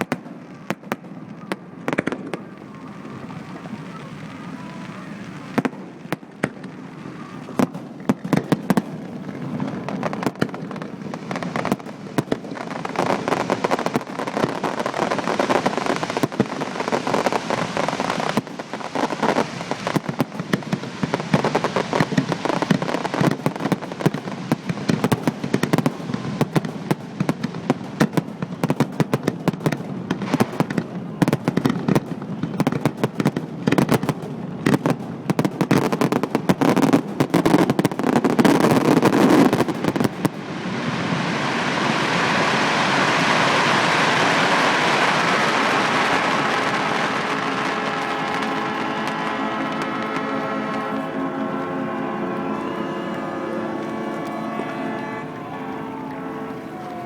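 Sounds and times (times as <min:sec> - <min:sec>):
firework bangs: 0:00.0 - 0:57.0
fireworks crackle: 0:00.0 - 0:57.0.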